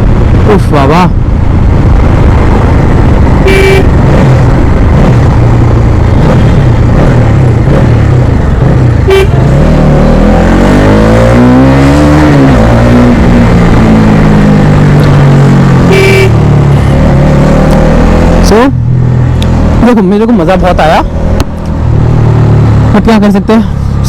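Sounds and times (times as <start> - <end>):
motorcycle engine: 0.0 - 24.0
vehicle horn beeps: 3.4 - 3.9, 9.1 - 9.4, 15.9 - 16.4.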